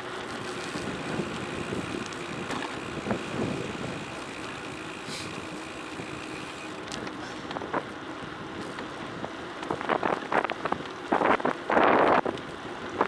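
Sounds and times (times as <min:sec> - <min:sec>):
bike clattering and rattling: 0:00.0 - 0:13.0
tyres on gravel: 0:00.0 - 0:13.0
wind on microphone: 0:00.4 - 0:06.4.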